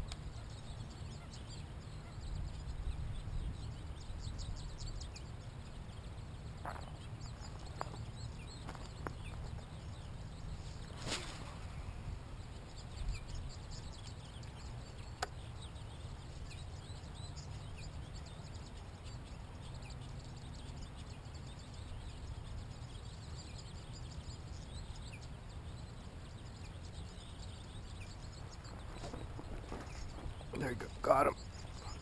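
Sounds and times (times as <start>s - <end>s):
steady low rumble: 0.0s - 23.4s
small birds chirping: 0.0s - 32.0s.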